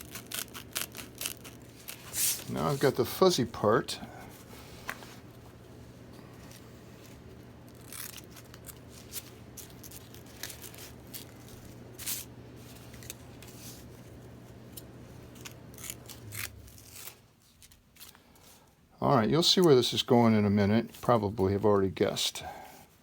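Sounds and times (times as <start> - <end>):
scissors snipping velcro: 0.0 - 2.0, 7.7 - 8.8, 15.4 - 18.1
rustling of material: 0.0 - 18.9
low steady hum: 0.0 - 23.0.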